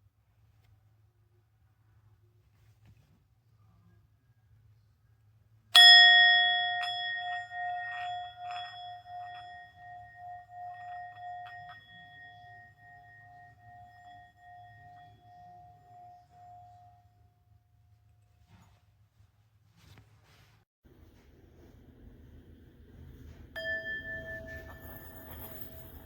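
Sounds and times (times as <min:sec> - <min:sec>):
singing bowl struck and ringing: 0:05.8 - 0:17.2, 0:23.6 - 0:26.0.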